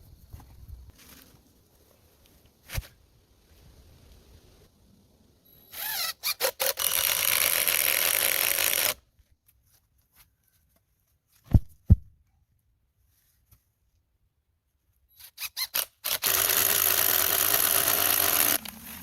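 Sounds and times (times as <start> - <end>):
power drill whining: 15.2 - 19.0.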